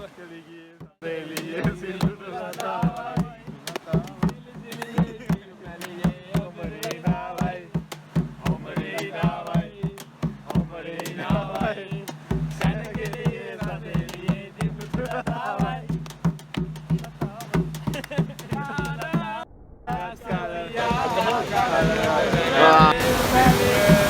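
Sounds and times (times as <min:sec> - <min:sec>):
music with steady drum beat: 0:00.8 - 0:19.4, 0:20.0 - 0:24.0
person singing: 0:17.4 - 0:24.0.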